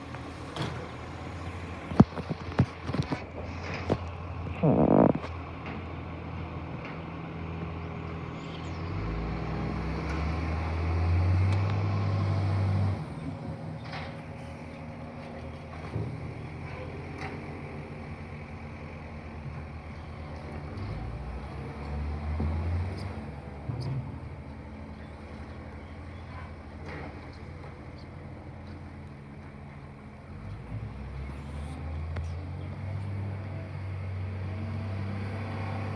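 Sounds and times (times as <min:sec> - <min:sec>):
diesel truck engine revving: 0:00.0 - 0:13.8, 0:19.8 - 0:25.0, 0:30.3 - 0:35.9.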